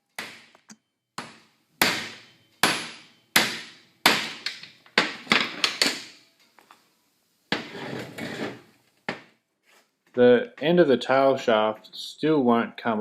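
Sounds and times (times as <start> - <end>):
hammer striking metal: 1.2 - 4.5.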